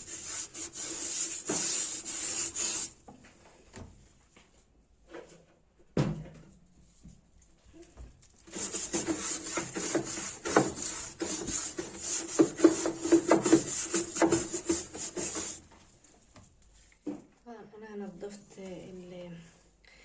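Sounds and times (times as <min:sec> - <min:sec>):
quick rasping scrub strokes: 0:00.0 - 0:03.0, 0:08.5 - 0:15.6.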